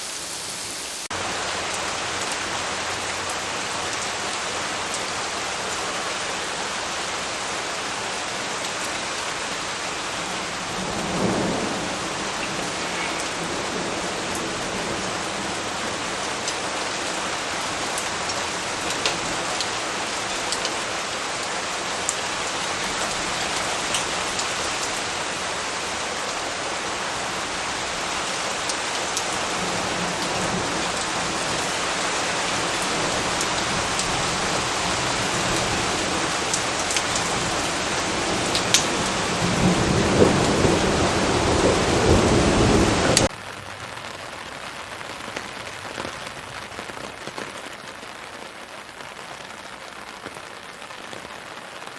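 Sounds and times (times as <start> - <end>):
rain falling: 0.0 - 51.9
thunder rumbling: 9.1 - 43.3.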